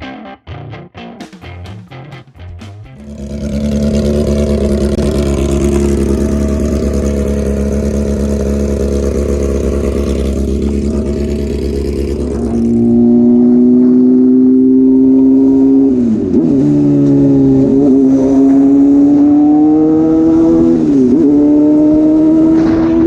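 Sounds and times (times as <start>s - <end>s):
motorcycle engine running: 2.8s - 23.0s
wind noise: 17.4s - 23.0s.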